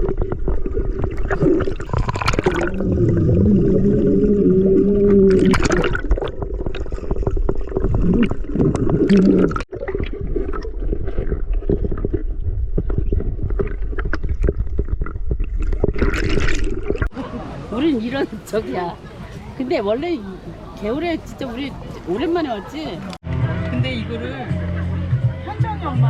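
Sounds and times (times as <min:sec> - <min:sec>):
underwater gurgling and bubbling: 0:00.0 - 0:17.1.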